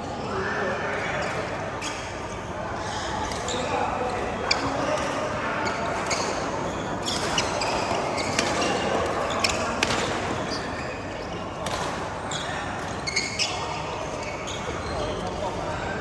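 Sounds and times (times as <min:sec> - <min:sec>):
voices in background: 0:00.0 - 0:16.0
shoe squeaks: 0:05.6 - 0:11.3, 0:12.3 - 0:15.3.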